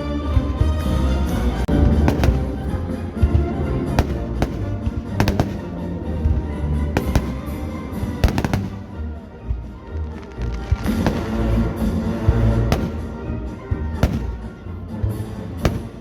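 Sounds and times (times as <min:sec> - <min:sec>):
fireworks bangs and cracks: 0:01.7 - 0:09.2, 0:10.0 - 0:13.4, 0:14.0 - 0:14.6, 0:15.5 - 0:16.0.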